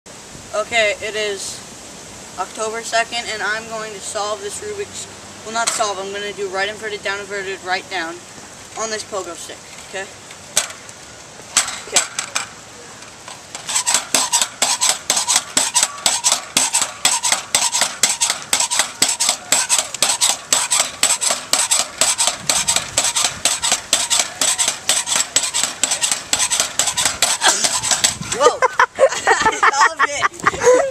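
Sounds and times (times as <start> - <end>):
pogo stick spring clanking: 10.5 - 10.8, 11.5 - 28.5.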